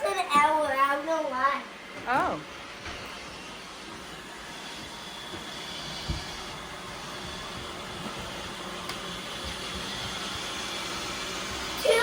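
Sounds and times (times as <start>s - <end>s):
robot vacuum cleaner whirring: 0.0s - 12.0s.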